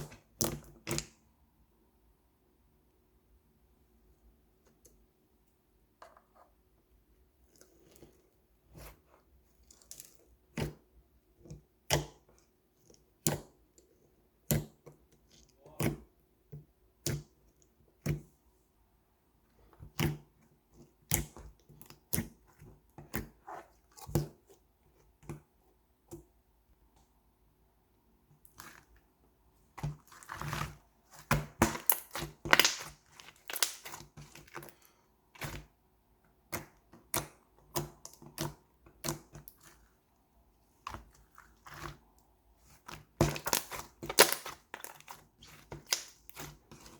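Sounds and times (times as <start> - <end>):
slime popping and clicking: 31.3 - 34.0, 43.2 - 44.8, 45.8 - 46.4.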